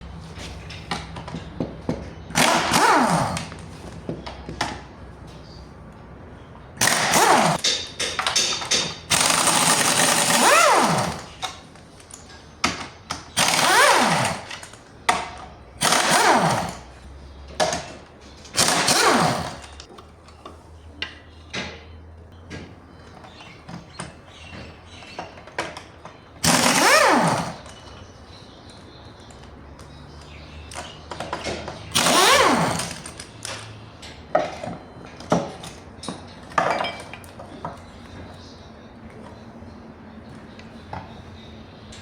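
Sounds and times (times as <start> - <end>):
power tool whirring: 2.3 - 3.6, 6.8 - 7.6, 9.1 - 11.4, 13.4 - 14.7, 15.8 - 16.9, 18.5 - 19.9, 26.4 - 27.8, 31.9 - 33.2.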